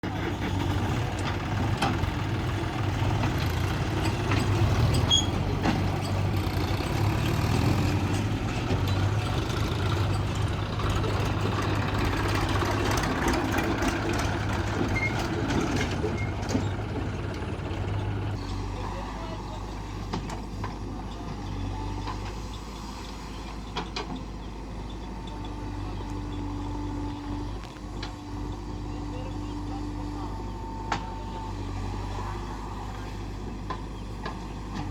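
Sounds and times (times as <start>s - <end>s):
backhoe diesel engine running: 0.0s - 34.9s
brief high squeaks: 5.0s - 5.4s.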